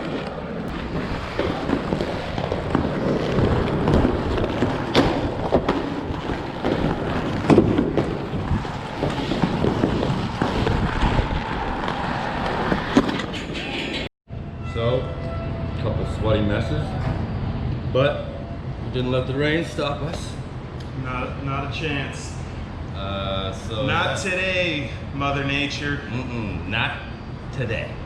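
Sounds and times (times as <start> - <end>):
skate wheels rolling on pavement: 0.0 - 14.0
skates clacking: 0.0 - 14.1
wind on microphone: 0.0 - 14.1.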